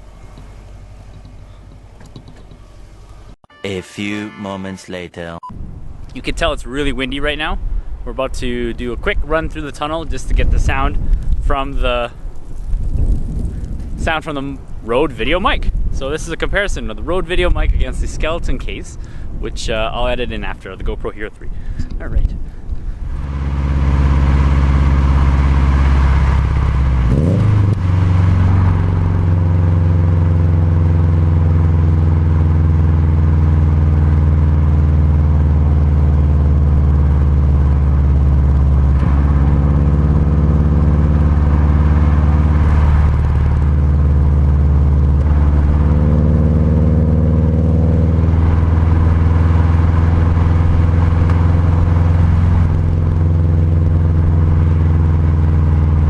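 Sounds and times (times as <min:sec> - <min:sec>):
car engine running while driving: 0:00.0 - 0:03.4, 0:21.8 - 0:56.0.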